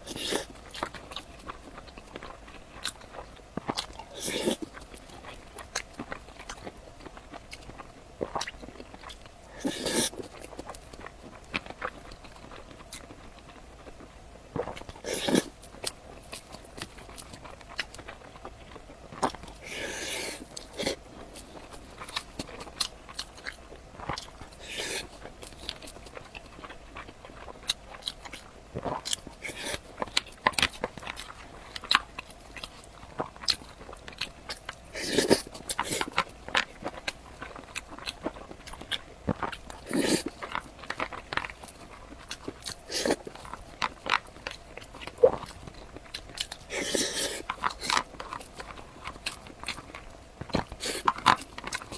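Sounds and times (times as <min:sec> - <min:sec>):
crunchy chewing: 0:00.0 - 0:51.9.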